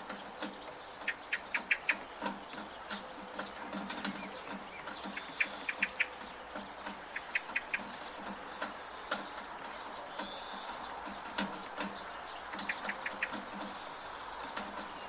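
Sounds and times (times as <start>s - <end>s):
bird chirping: 0.0s - 15.0s
drips and taps from a gutter: 0.0s - 15.0s
steady rain: 0.0s - 15.0s.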